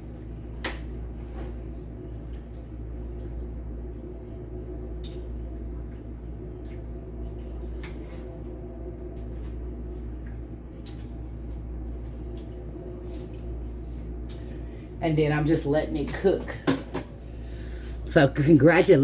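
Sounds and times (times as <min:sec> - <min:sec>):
food bubbling in a pan: 0:00.0 - 0:14.8
steady low hum: 0:00.0 - 0:19.0.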